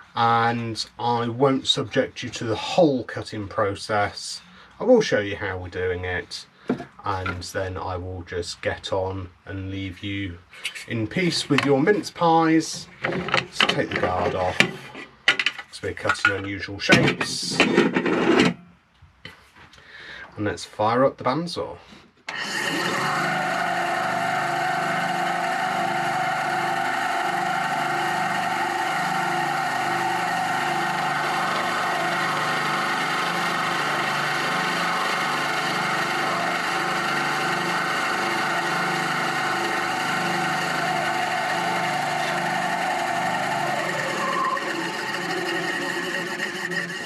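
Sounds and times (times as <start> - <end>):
bandsaw cutting wood: 13.6 - 14.6, 22.3 - 47.0.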